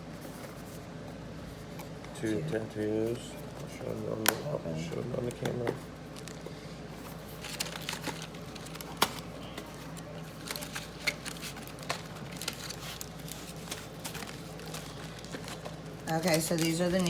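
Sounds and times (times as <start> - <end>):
steady low hum: 0.0 - 17.0
plastic packaging crinkling: 4.1 - 17.0.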